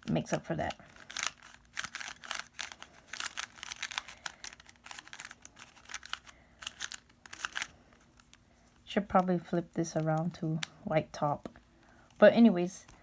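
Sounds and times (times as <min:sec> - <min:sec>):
plastic puzzle clicking: 0:01.0 - 0:07.7.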